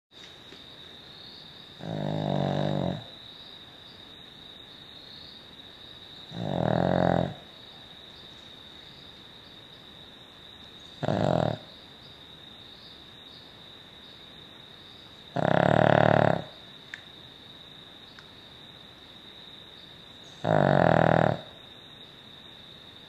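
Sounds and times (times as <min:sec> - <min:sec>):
dog snoring: 0:01.8 - 0:03.2, 0:06.2 - 0:07.5, 0:11.0 - 0:11.7, 0:15.3 - 0:16.6, 0:20.4 - 0:21.6.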